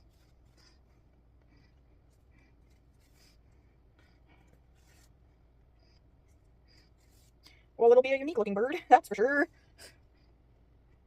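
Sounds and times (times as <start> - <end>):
low room hum: 0.0 - 11.0
needle and thread scratching fabric: 4.7 - 5.2.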